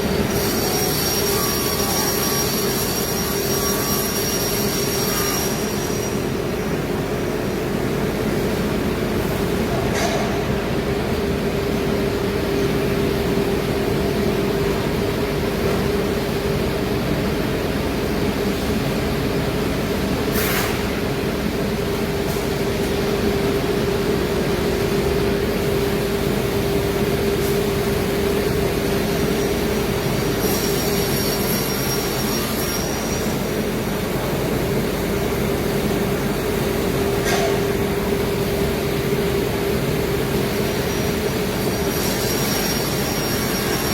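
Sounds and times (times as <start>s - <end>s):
cnc machine cutting plywood: 0.1s - 6.2s, 29.5s - 33.5s, 41.1s - 43.9s.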